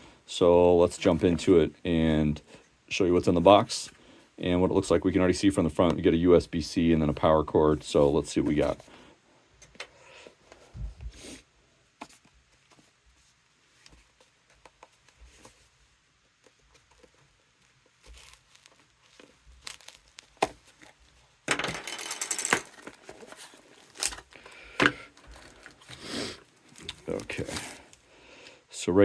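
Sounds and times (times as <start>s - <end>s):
packaging clicks and rustles: 16.4s - 28.0s
packaging tearing: 18.0s - 21.0s, 22.6s - 24.6s.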